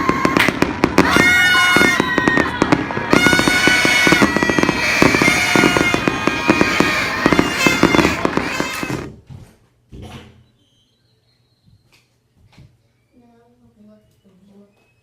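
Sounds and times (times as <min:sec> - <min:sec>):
fireworks popping and crackling: 0:00.0 - 0:09.2.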